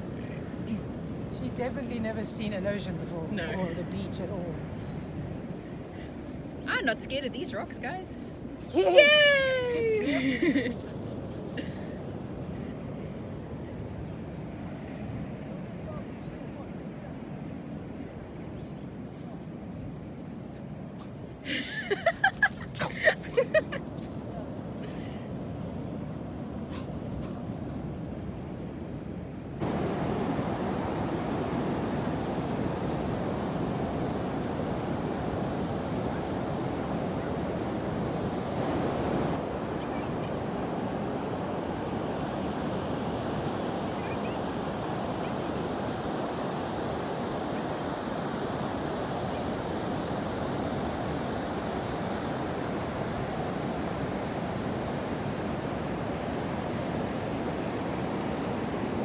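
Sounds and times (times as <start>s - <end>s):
wind buffeting microphone: 0.0s - 59.0s
ocean surf washing in: 29.6s - 59.0s.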